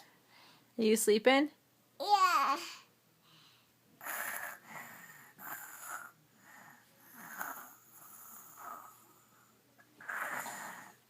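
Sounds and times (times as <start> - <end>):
girl fake-snoring: 4.0 - 9.4, 10.0 - 11.0.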